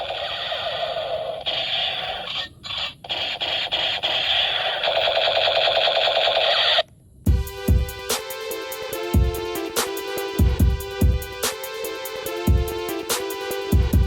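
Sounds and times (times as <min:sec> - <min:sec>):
toy gun buzzing rattle: 0:00.0 - 0:06.9.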